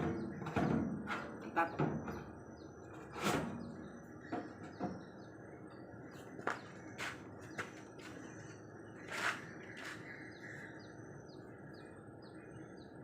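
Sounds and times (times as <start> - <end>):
knocks and clunks: 0.0 - 5.2.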